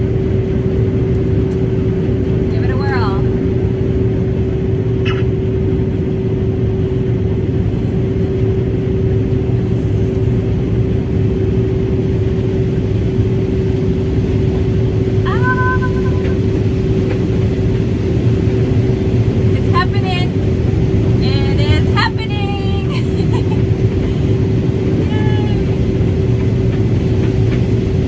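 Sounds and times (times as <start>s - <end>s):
combine harvester running: 0.0s - 28.0s
short rising tone: 15.3s - 16.6s.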